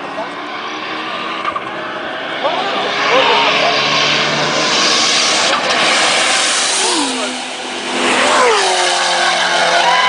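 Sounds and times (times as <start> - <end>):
racing cars passing: 0.0 - 10.0
wind rush and tyre noise: 3.1 - 9.4.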